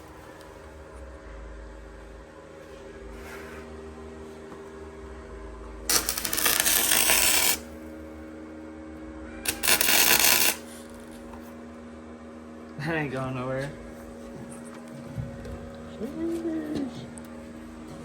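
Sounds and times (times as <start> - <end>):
steady shop hum: 0.0 - 18.0
welding arc crackling: 5.9 - 7.8, 9.5 - 11.1.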